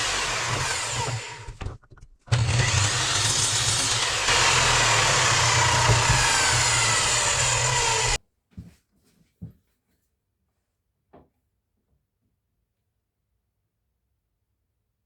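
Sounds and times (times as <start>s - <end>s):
power saw cutting wood: 0.0s - 1.6s, 2.3s - 8.2s.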